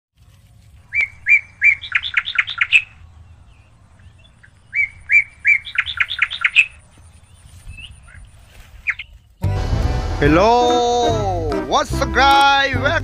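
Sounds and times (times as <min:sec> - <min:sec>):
bird singing: 0:00.8 - 0:09.4.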